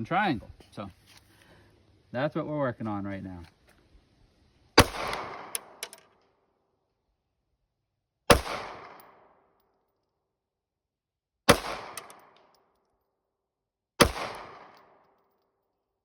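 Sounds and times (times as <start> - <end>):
pistol shots echoing: 4.8 - 5.8, 8.3 - 9.3, 11.5 - 12.4, 14.0 - 15.0.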